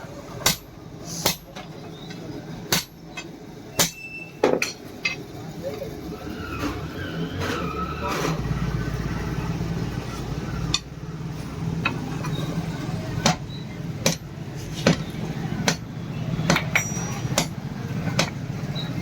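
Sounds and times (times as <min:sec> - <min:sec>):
hammer striking steel on anvil: 0:00.4 - 0:05.2, 0:13.2 - 0:15.9, 0:16.5 - 0:18.4.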